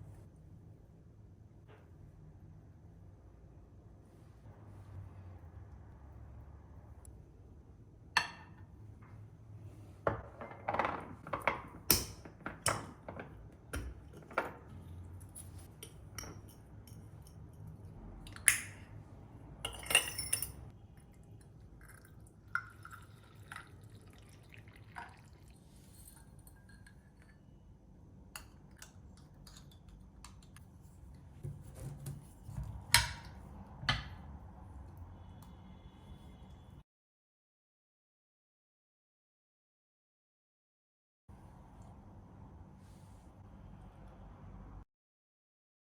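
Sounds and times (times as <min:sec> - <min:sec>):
dishes and utensils clinking: 0:15.4 - 0:17.4, 0:19.7 - 0:20.7
pouring: 0:21.7 - 0:26.3.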